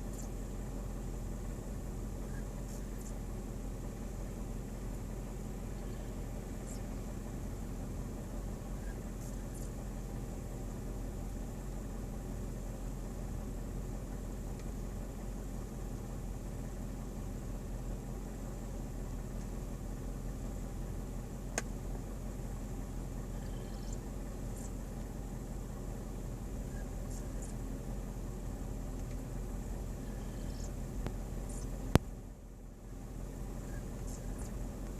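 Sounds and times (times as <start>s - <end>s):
car engine low hum: 0.0s - 34.9s.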